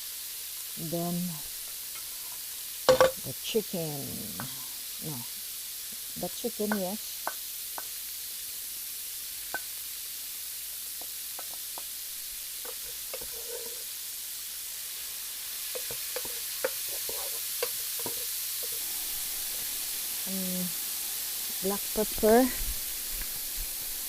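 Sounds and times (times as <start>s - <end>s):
chicken sizzling in a pot: 0.0s - 24.0s
spoon stirring and tapping pot: 2.9s - 3.2s, 6.7s - 7.9s, 11.0s - 11.9s, 12.6s - 13.8s, 15.6s - 18.8s.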